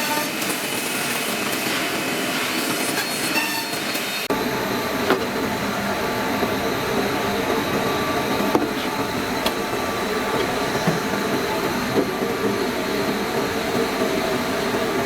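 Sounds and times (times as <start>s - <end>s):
drilling machine whirring and rattling: 0.3s - 15.0s.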